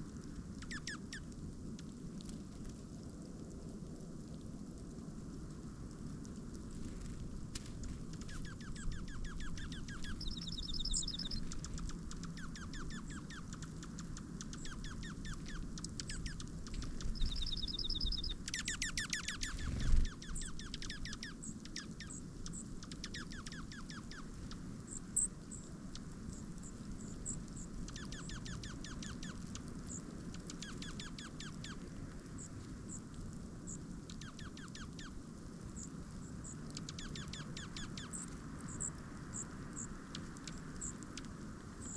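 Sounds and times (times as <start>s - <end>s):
low steady background rumble: 0.0s - 41.9s
songbirds calling and chipping: 0.6s - 1.3s, 8.1s - 31.8s, 33.7s - 35.2s, 35.8s - 41.9s.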